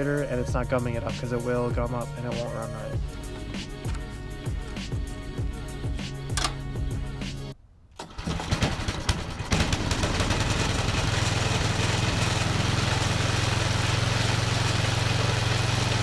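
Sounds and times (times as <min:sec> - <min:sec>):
snowblower engine running: 0:08.0 - 0:16.0.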